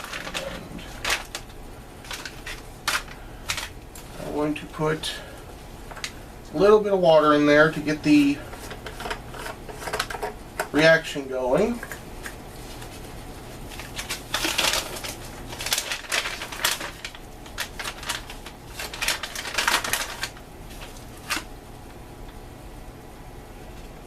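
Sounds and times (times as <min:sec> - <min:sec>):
plastic bag crinkling: 0:00.0 - 0:05.3, 0:12.5 - 0:21.5.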